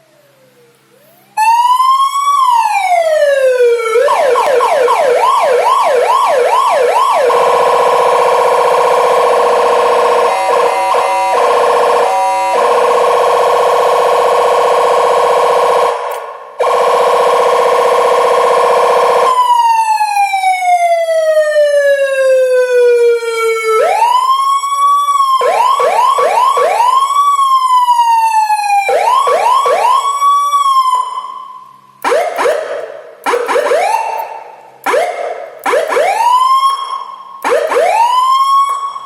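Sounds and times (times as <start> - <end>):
electronic siren switching tones: 0.0 - 39.0.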